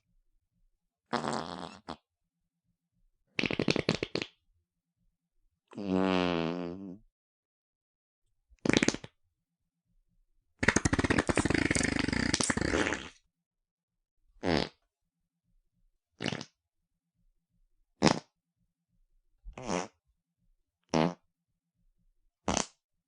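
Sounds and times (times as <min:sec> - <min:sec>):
farts: 0:01.1 - 0:02.1, 0:03.4 - 0:04.4, 0:05.7 - 0:07.0, 0:08.6 - 0:09.2, 0:10.6 - 0:13.3, 0:14.4 - 0:14.8, 0:16.2 - 0:16.6, 0:18.0 - 0:18.4, 0:19.6 - 0:20.0, 0:20.9 - 0:21.3, 0:22.4 - 0:22.8.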